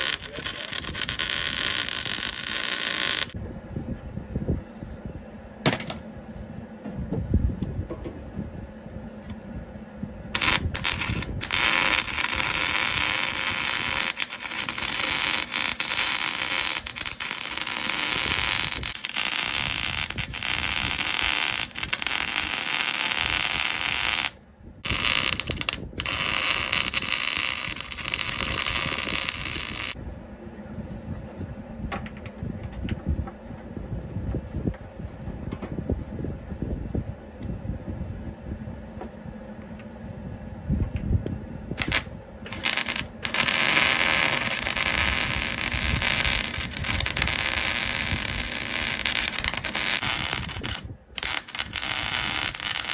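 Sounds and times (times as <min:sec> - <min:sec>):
arc welding crackling hiss: 0:00.0 - 0:03.4, 0:10.4 - 0:30.0, 0:41.8 - 0:52.9.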